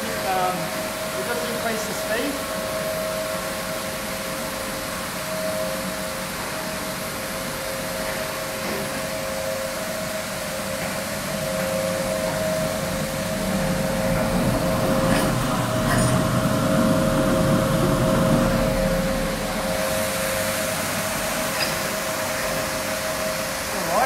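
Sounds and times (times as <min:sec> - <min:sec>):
washing machine mechanical rush: 0:00.0 - 0:24.0
low rumble: 0:12.0 - 0:20.3.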